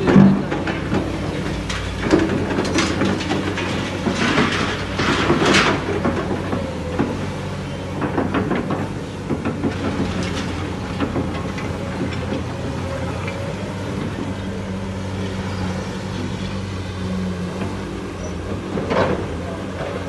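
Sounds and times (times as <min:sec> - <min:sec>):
metallic clanking and rattling: 0:00.0 - 0:07.1
diesel engine running: 0:00.0 - 0:20.0.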